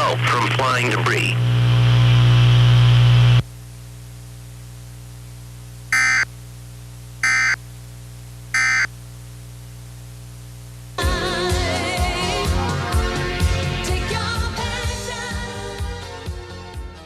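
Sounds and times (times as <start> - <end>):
loud low hum: 0.0 - 11.0
steady radio hum: 0.0 - 11.0.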